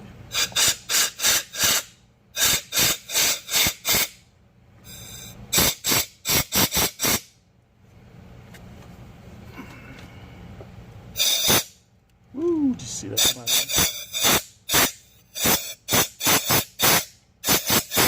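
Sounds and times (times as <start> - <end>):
high whistle: 0.3 - 4.1, 4.8 - 7.3, 11.2 - 11.8, 13.2 - 18.0
compressed air blasts: 0.3 - 4.2, 4.9 - 7.4, 11.2 - 11.8, 13.2 - 18.0.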